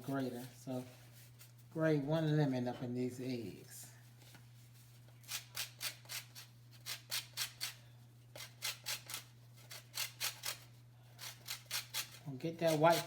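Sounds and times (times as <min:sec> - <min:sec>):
lemon grated on hand grater: 0:11.2 - 0:13.0.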